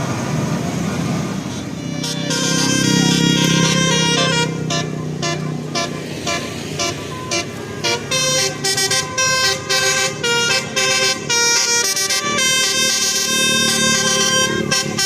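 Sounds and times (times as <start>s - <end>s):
musical air horn notes: 1.8s - 15.0s.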